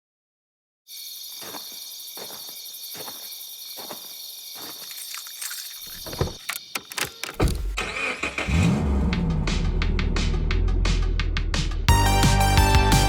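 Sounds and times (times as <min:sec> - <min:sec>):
high-pitched insect chirring: 0:00.9 - 0:07.3.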